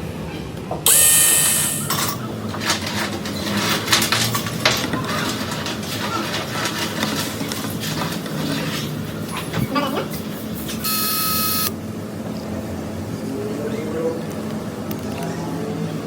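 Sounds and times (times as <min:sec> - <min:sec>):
hissing burst: 0:00.9 - 0:02.0
steady tones: 0:00.9 - 0:02.0.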